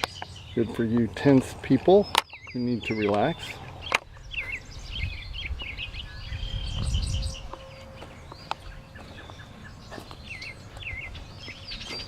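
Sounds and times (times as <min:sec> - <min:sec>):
songbirds singing: 0:00.0 - 0:12.0
low microphone rumble: 0:02.9 - 0:12.0.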